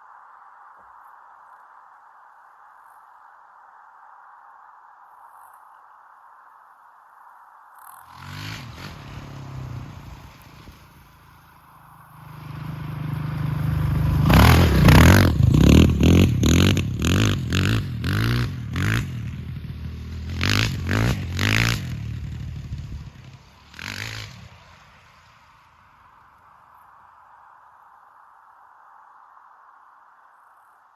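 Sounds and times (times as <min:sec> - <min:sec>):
quad engine idling and revving: 0:08.0 - 0:25.2.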